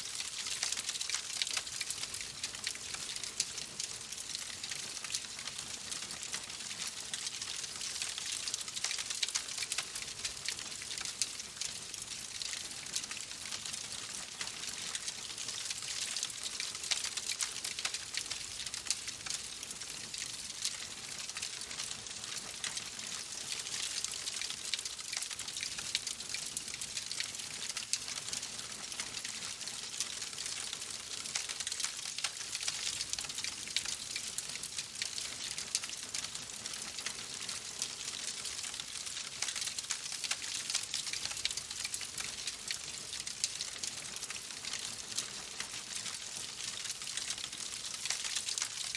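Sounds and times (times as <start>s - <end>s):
logs crackling and popping: 20.7s - 48.9s.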